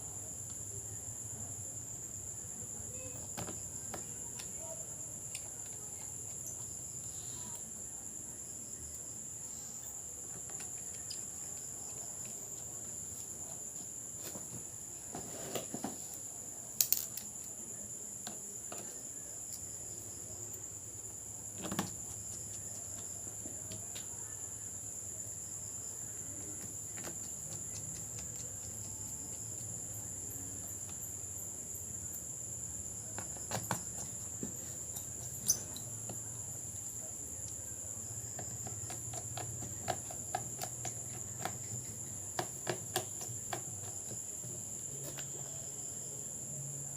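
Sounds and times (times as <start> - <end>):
clicks and taps of small parts: 16.8 - 17.5.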